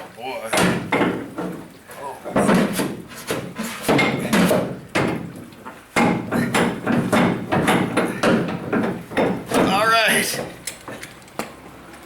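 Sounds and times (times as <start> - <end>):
hammer on sheet metal: 2.4 - 5.2, 6.0 - 10.5.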